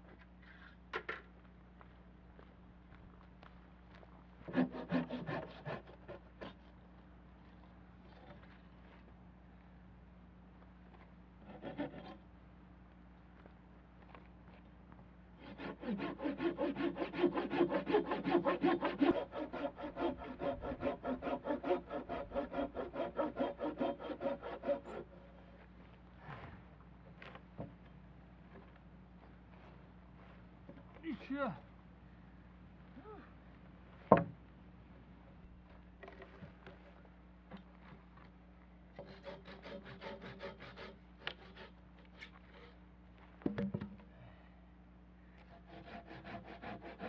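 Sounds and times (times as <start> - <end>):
hand saw cutting wood: 4.5 - 6.7, 11.4 - 12.2, 15.4 - 25.6, 39.0 - 42.7, 45.4 - 47.0.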